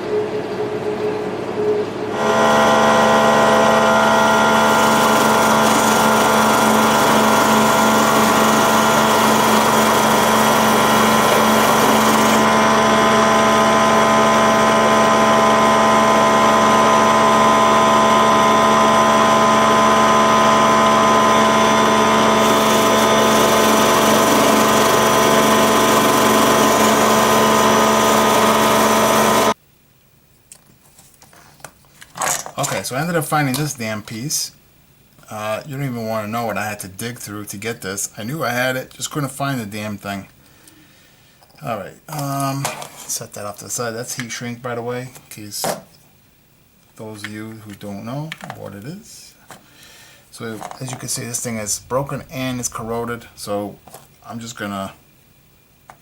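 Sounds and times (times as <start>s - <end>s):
electric power tool motor whining: 2.1s - 29.6s.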